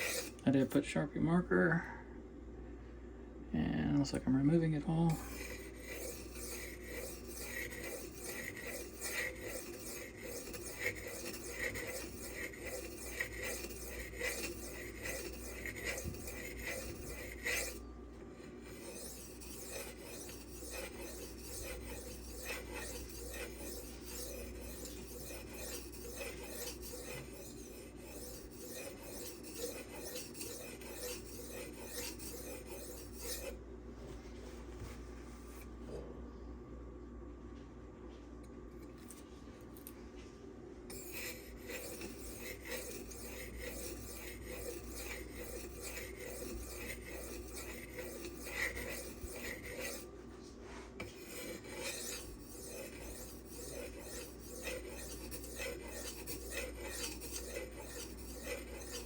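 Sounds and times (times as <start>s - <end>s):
knife rasping on sharpening stone: 0.0s - 0.4s, 5.1s - 17.8s, 18.6s - 33.6s, 40.9s - 50.1s, 51.0s - 59.0s.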